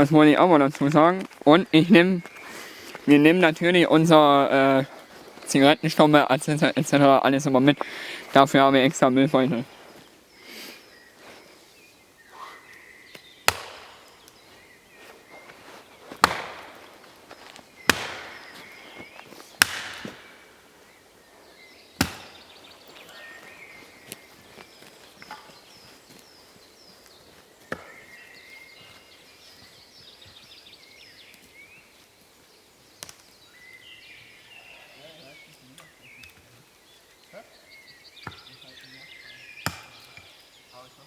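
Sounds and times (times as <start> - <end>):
axe chopping wood: 13.1 - 14.4, 16.1 - 18.8, 19.6 - 20.5, 22.0 - 22.6, 27.7 - 28.1, 39.6 - 40.1.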